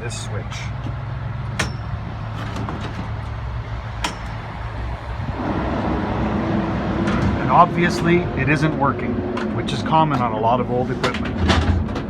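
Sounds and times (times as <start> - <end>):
furnace humming: 0.0 - 8.1
rushing sound with steady tone: 0.0 - 10.0.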